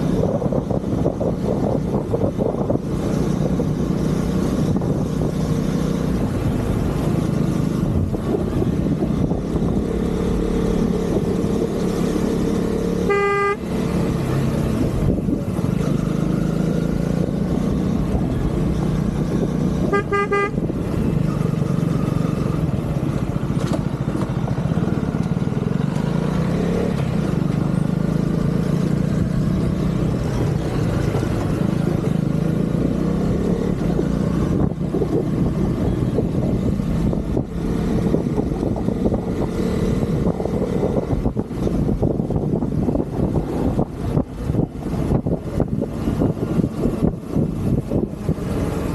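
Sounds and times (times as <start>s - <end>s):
motorcycle engine running: 0.0s - 48.9s
vehicle horn tooting: 13.0s - 13.7s, 19.8s - 20.7s.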